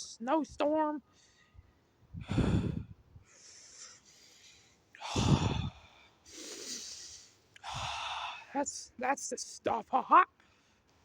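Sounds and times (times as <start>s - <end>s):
man breathing deeply: 1.1s - 8.5s.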